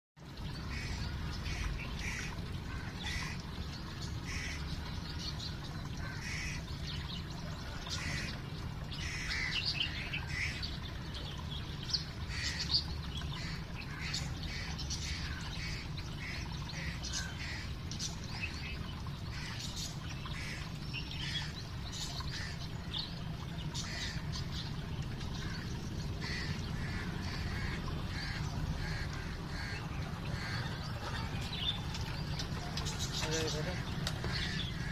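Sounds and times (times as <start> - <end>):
waterfowl squawking and chirping: 25.4 - 34.9.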